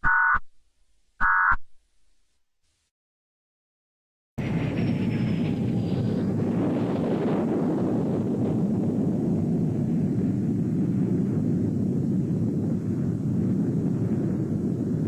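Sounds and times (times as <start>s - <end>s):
steady low rumble: 4.4s - 15.0s.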